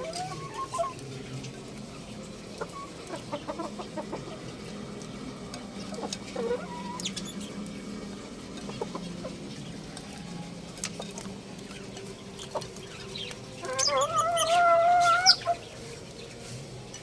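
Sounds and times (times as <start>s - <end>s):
young rooster clucking and chirping: 0.0s - 1.5s, 2.2s - 4.7s, 5.8s - 7.6s, 8.5s - 10.2s, 10.9s - 17.0s.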